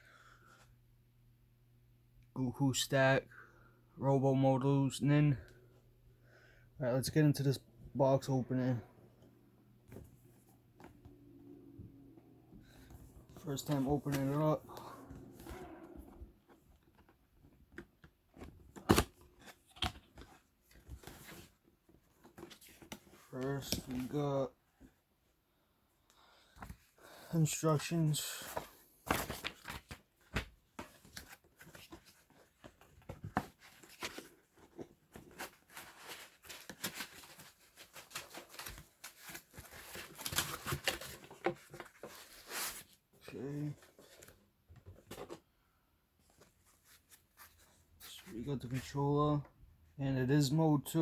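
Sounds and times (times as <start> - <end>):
box packaging rustling: 28.5 - 43.0.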